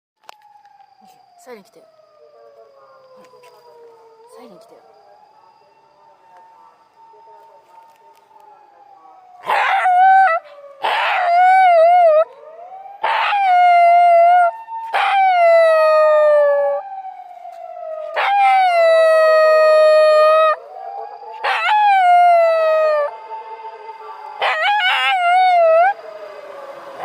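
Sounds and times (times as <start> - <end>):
police siren wailing: 0.2 - 27.0
dog howling: 9.4 - 12.3, 13.0 - 16.8, 18.0 - 23.2, 24.4 - 26.0.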